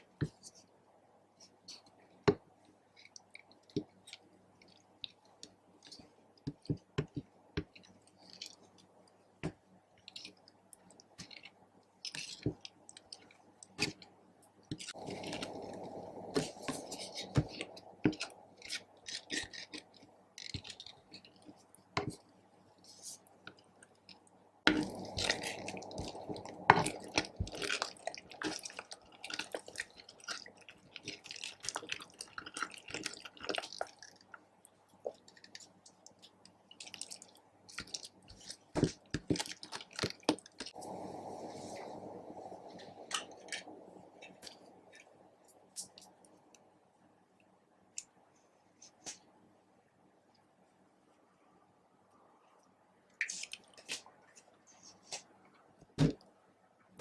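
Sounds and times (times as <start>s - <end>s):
slime squishing by hand: 1.4s - 46.3s.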